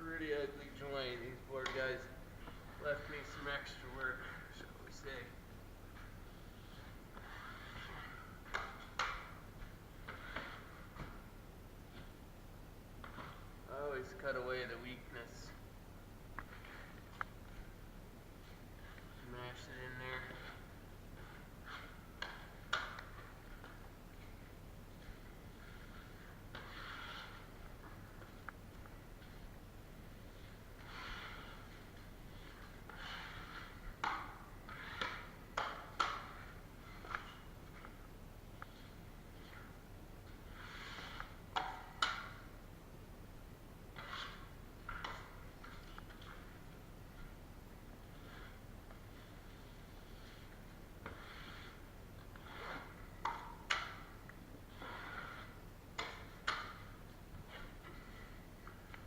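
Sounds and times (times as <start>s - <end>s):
drywall knife scraping compound: 5.9s - 9.4s, 10.0s - 11.1s, 18.8s - 23.8s, 25.0s - 28.4s, 30.3s - 38.0s, 40.5s - 42.4s, 44.0s - 46.6s, 48.1s - 54.1s, 54.7s - 59.0s.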